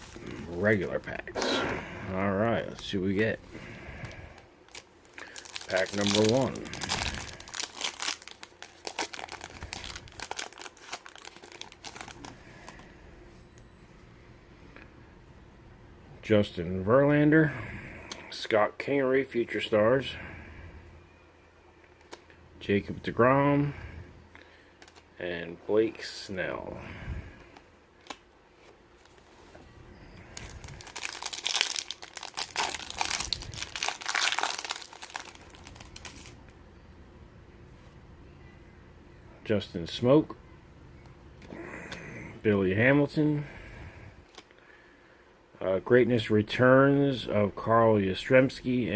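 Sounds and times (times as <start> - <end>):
foil wrapper crinkling: 4.7 - 12.8, 30.3 - 36.4.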